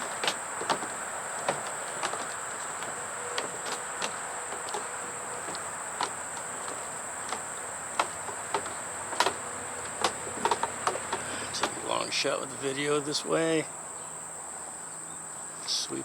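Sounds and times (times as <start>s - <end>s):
insects chirping: 0.0s - 16.0s.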